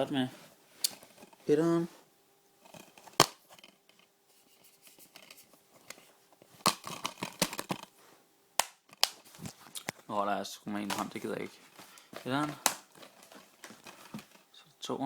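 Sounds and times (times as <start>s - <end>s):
plastic cases clicking: 2.7s - 4.0s, 6.6s - 7.9s, 8.6s - 9.6s, 10.9s - 14.4s.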